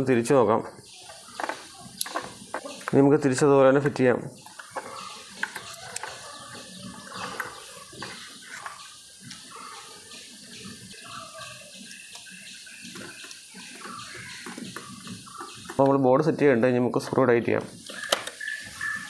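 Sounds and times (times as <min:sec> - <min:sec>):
plastic radio parts clicking: 0:17.6 - 0:18.4.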